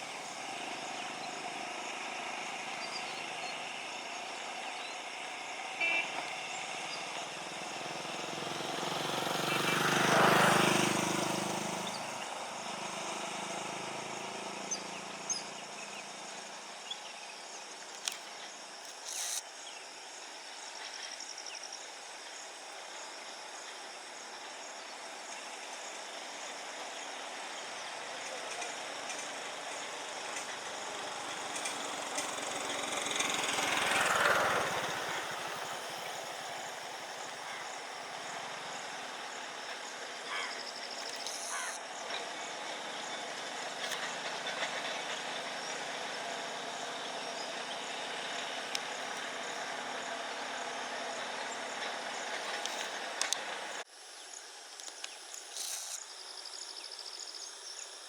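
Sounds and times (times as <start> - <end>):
outdoor background noise: 0.0 - 58.0
vehicle passing: 5.1 - 15.3, 30.1 - 40.5.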